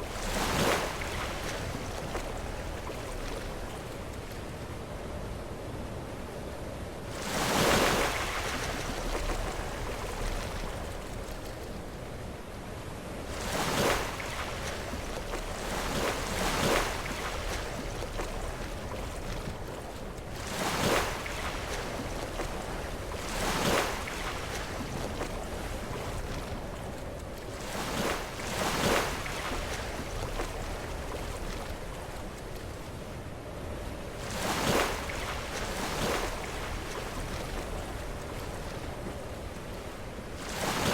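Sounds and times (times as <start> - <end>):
waves breaking against rocks: 13.3 - 33.0, 34.2 - 40.9.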